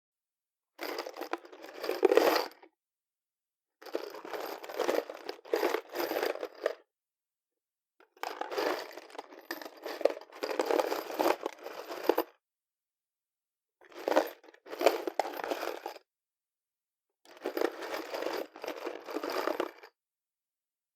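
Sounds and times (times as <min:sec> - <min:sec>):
metal screws rattling in a box: 0:00.9 - 0:02.4.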